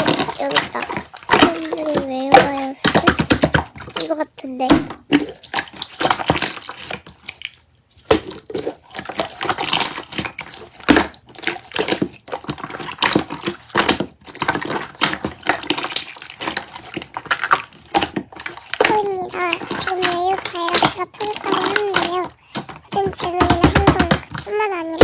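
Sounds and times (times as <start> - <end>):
slime squished by hand: 0.0 - 25.0.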